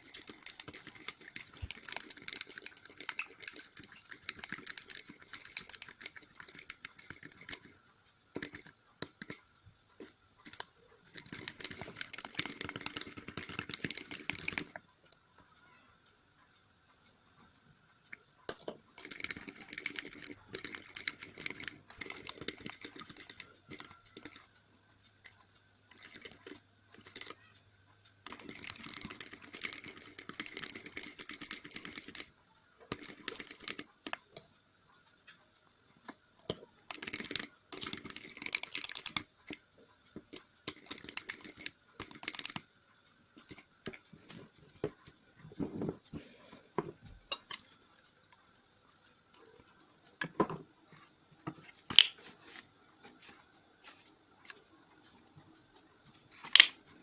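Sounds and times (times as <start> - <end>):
slime being stirred in a bowl: 0.0 - 9.4, 10.0 - 14.8, 19.0 - 24.5, 25.1 - 27.5, 28.2 - 32.3, 32.9 - 34.2, 36.5 - 42.6.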